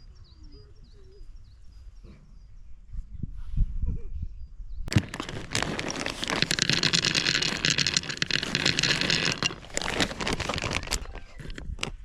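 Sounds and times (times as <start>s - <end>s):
wrapping material crinkling: 4.9s - 11.9s.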